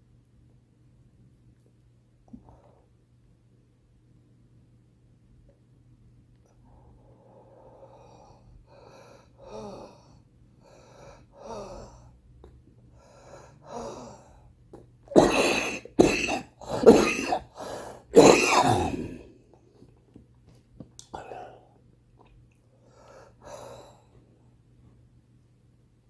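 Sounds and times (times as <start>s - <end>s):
wheezy laboured breathing: 6.8s - 12.2s, 12.9s - 14.6s, 15.4s - 19.3s
person coughing loudly: 15.1s - 19.3s.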